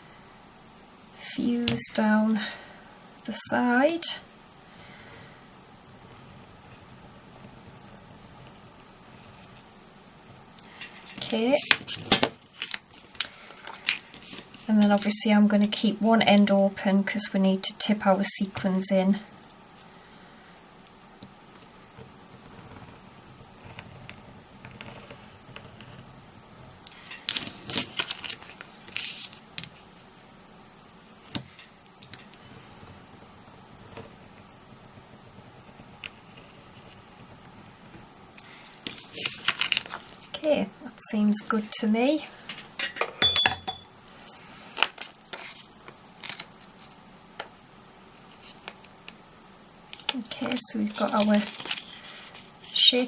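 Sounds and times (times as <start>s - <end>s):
rustling and clicks of craft materials: 49.9s - 52.8s.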